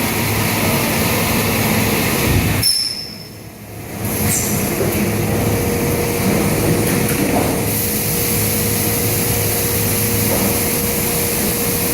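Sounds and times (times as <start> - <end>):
machine mechanical hum: 0.0 - 11.9
hiss of air: 7.4 - 11.9.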